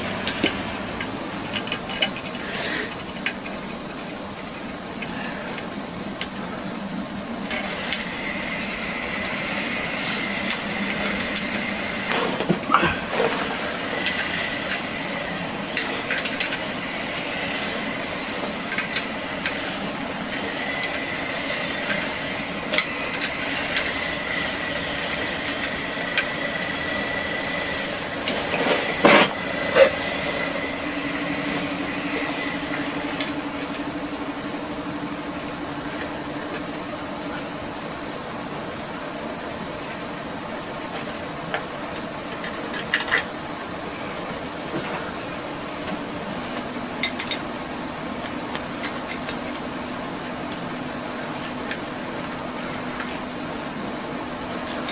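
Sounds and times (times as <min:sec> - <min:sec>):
steady hiss: 0:00.0 - 0:54.9
metal tools clinking: 0:00.2 - 0:04.0, 0:07.5 - 0:08.7, 0:10.3 - 0:16.9, 0:18.2 - 0:24.0, 0:28.2 - 0:30.0, 0:47.0 - 0:47.5.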